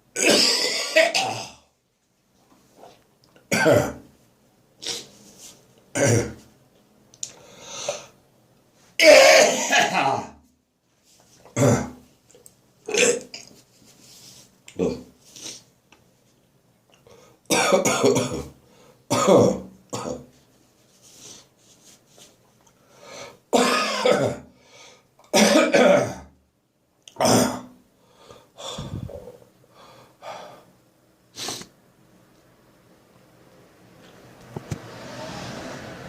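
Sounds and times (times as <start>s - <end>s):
man coughing: 0.2s - 1.6s, 3.5s - 4.0s, 9.0s - 10.3s, 17.5s - 20.2s, 23.6s - 24.5s, 25.4s - 26.3s.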